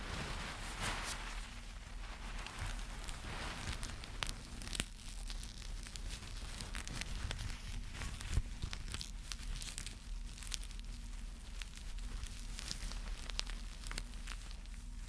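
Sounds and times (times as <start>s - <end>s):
crinkling and crackling: 0.0s - 15.0s.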